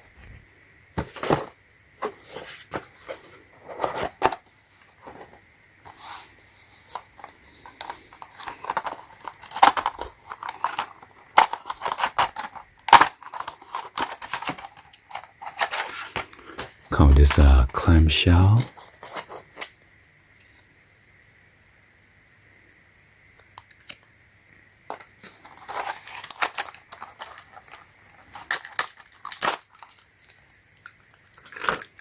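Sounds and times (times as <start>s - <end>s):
cardboard tearing and rustling: 1.0s - 7.3s, 8.1s - 16.3s, 25.2s - 30.0s, 31.2s - 32.0s.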